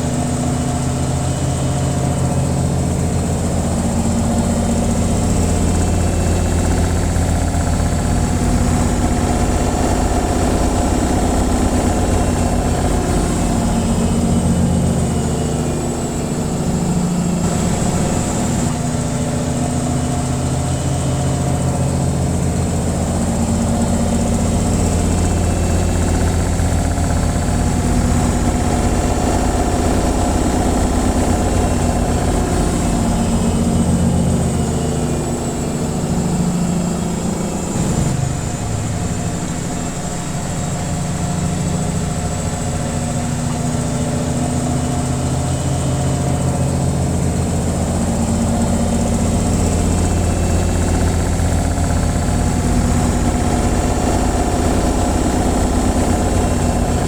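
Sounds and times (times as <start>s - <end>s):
washing machine spinning: 0.0s - 57.0s.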